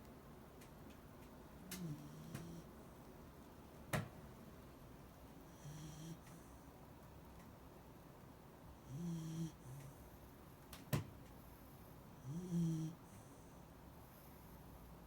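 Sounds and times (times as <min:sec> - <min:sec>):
dog snoring: 0:01.7 - 0:02.7, 0:05.5 - 0:06.7, 0:08.8 - 0:10.0, 0:12.2 - 0:13.6.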